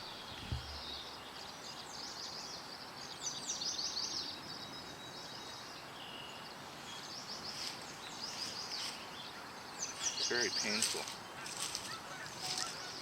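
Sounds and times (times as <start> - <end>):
outdoor background hiss: 0.0 - 13.0
small birds chirping: 0.0 - 13.0.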